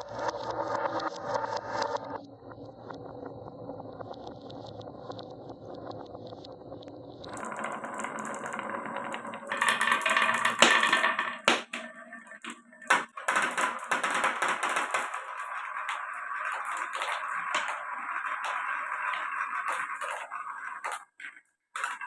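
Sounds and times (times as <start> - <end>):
marbles rolling down wooden run: 7.3 - 22.0.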